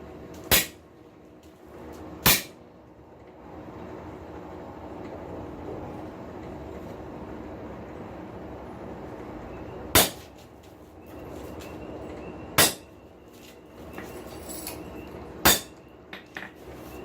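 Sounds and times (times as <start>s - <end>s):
hammer striking metal punch: 0.5s - 0.8s, 2.2s - 2.6s, 10.0s - 10.3s, 12.6s - 12.9s, 15.4s - 16.6s.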